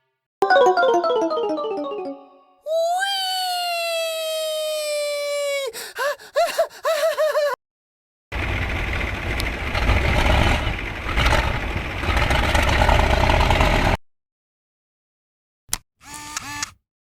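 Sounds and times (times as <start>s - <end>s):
heavy diesel engine running: 8.4s - 14.0s.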